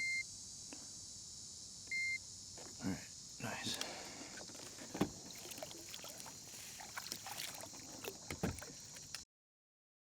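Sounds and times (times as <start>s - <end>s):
steady high hiss: 0.0s - 7.0s
light water sounds: 5.0s - 9.2s.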